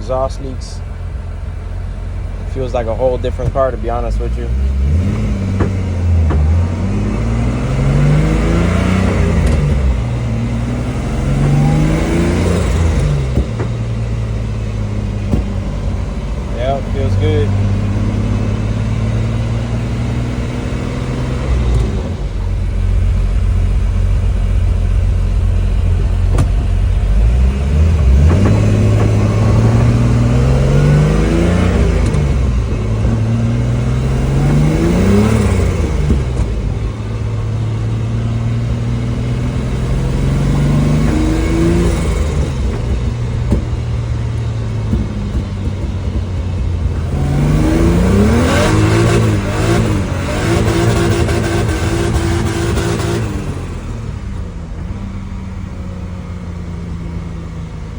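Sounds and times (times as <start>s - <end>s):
car engine accelerating: 0.0s - 57.9s.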